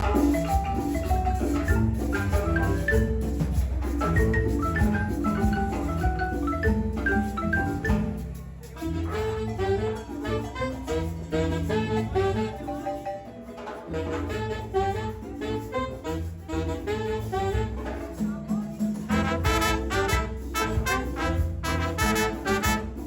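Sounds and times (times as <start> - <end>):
steady bass line: 0.0 - 10.0, 19.1 - 23.0
marimba melodic runs: 0.0 - 23.0.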